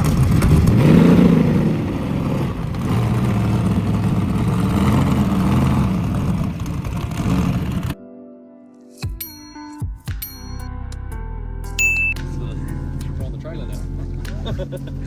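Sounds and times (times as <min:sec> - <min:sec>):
car engine revving: 0:00.0 - 0:08.0.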